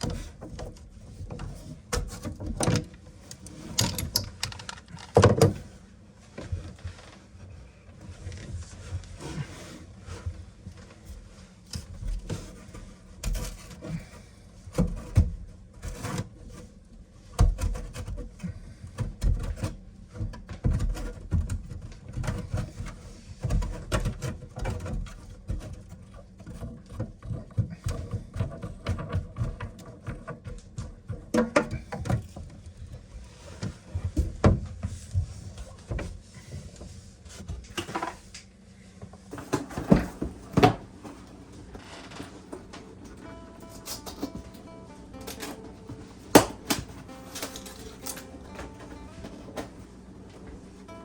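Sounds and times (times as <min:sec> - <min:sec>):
tools knocking and scraping: 0:00.0 - 0:05.6.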